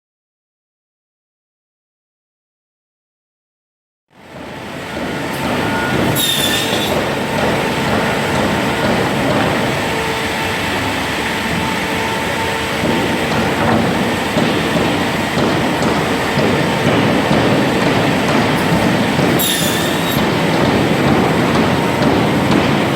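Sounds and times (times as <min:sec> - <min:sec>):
saw machine clattering: 0:04.4 - 0:22.9
high-pitched squeal: 0:05.6 - 0:07.0, 0:19.3 - 0:20.3.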